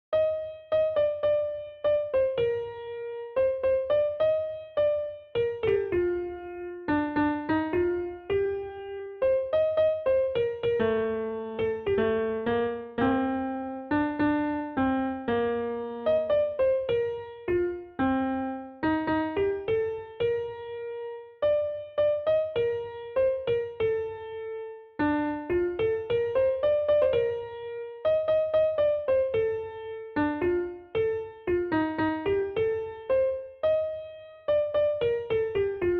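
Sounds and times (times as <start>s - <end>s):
simple melody of struck notes: 0.2s - 35.9s.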